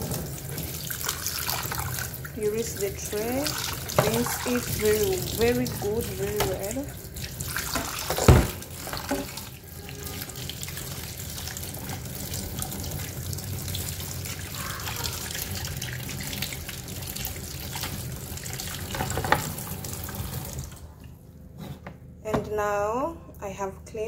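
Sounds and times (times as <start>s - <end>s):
tap water splashing: 3.1s - 20.8s.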